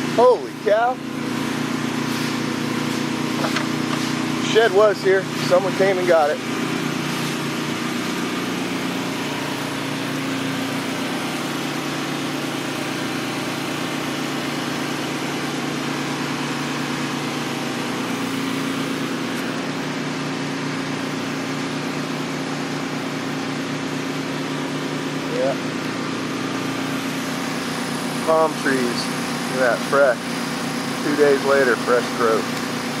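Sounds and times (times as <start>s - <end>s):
motor humming: 0.0s - 33.0s.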